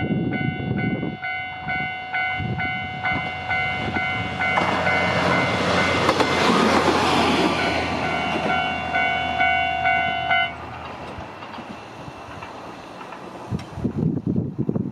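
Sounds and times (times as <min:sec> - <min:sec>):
level crossing warning bell: 0:00.0 - 0:06.7, 0:07.3 - 0:10.7
diesel railcar passing: 0:00.0 - 0:14.9.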